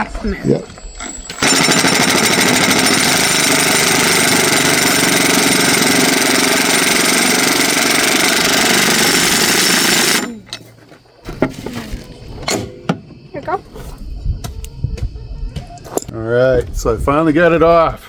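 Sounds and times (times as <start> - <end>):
impact wrench hammering: 1.3 - 10.3.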